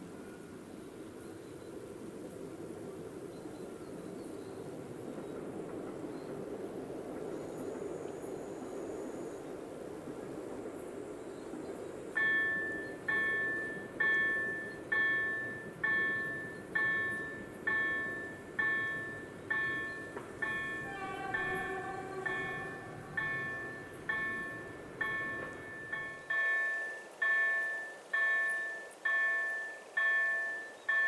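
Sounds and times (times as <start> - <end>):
low background noise: 0.0 - 31.0
level crossing warning bell: 12.1 - 31.0.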